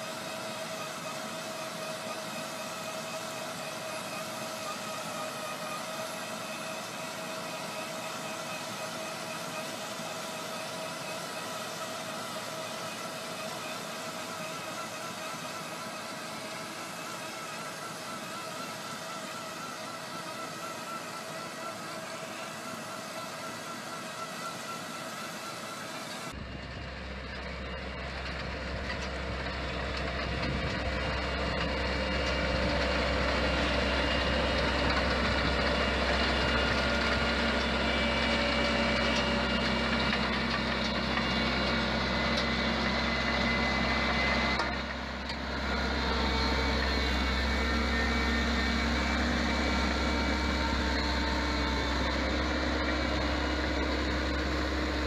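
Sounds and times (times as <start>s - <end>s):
engine humming: 25.6s - 55.0s.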